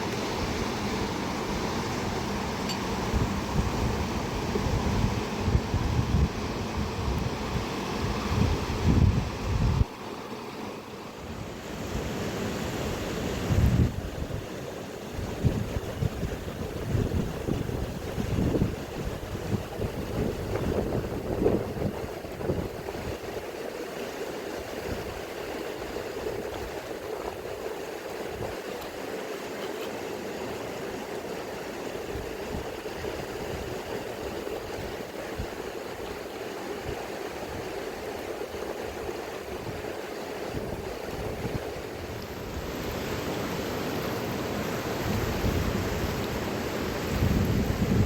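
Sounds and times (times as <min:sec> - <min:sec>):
river rushing: 0:00.0 - 0:48.0
wind buffeting microphone: 0:02.7 - 0:09.9, 0:13.4 - 0:14.5, 0:15.2 - 0:23.3, 0:38.6 - 0:43.2, 0:45.0 - 0:48.0.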